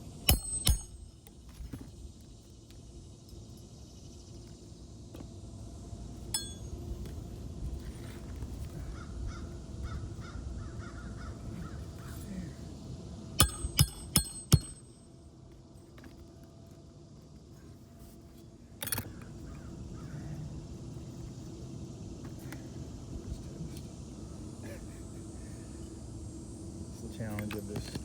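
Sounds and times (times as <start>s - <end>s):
hammer blows on metal: 0.2s - 1.1s, 13.4s - 15.0s
metal clink: 0.2s - 1.1s, 6.3s - 6.8s, 13.4s - 15.1s, 18.8s - 19.1s.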